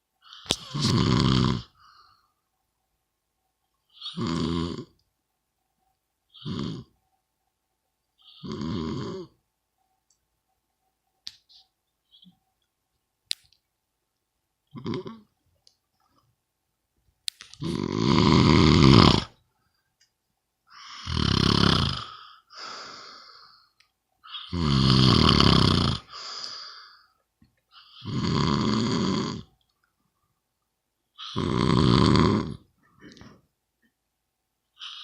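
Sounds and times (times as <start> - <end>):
person snoring loudly: 0.4 - 1.8, 4.0 - 4.9, 6.4 - 6.9, 8.2 - 9.3, 14.7 - 15.2, 17.6 - 19.4, 20.8 - 22.3, 24.3 - 26.2, 27.9 - 29.5, 31.2 - 32.7.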